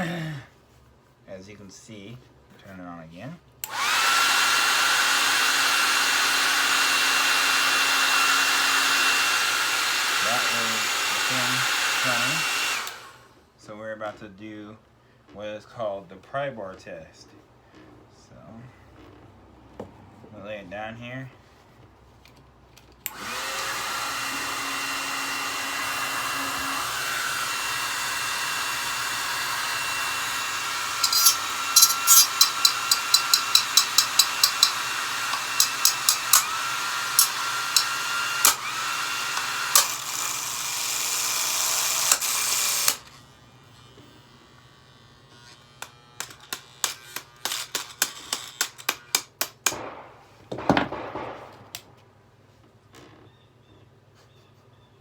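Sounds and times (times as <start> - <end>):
hair dryer motor whining: 3.6 - 13.3, 23.1 - 47.7
pry bar clattering in fan blades: 31.0 - 36.6.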